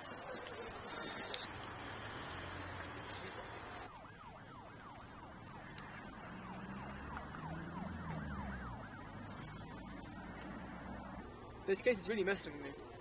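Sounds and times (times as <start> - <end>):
low vehicle engine hum: 0.5 - 12.0
siren sweeping rapidly: 3.9 - 11.4.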